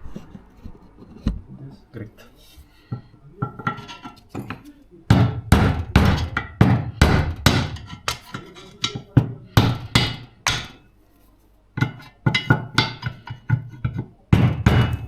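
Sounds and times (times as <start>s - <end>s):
hammer striking metal: 3.4s - 10.8s, 11.8s - 15.0s.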